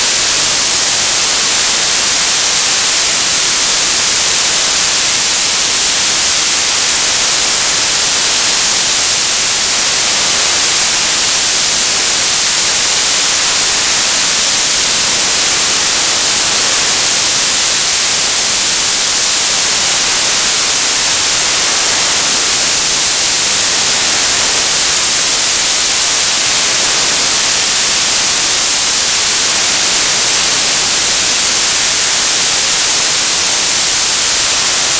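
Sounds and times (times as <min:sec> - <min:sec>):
television static hiss: 0:00.0 - 0:34.9.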